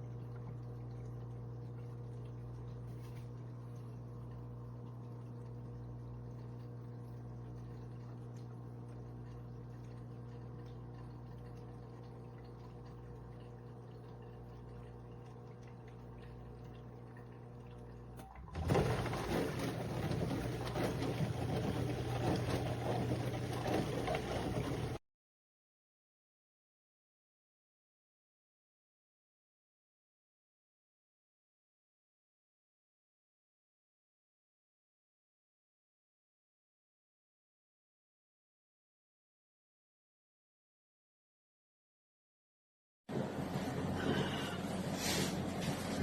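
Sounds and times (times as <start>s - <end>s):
dishwasher motor hum: 0.0s - 25.0s, 43.1s - 46.0s.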